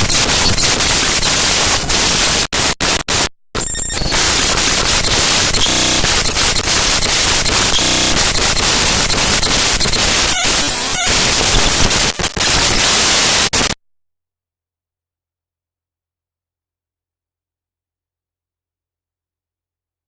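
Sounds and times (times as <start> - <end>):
harsh static-like noise: 0.0 - 13.8
patterned buzzy noise: 0.0 - 13.8.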